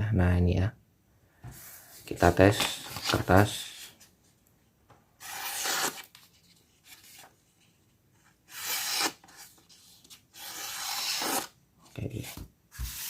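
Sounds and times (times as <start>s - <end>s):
knife blade slicing paper: 5.2s - 6.2s, 8.5s - 9.4s, 10.4s - 11.5s.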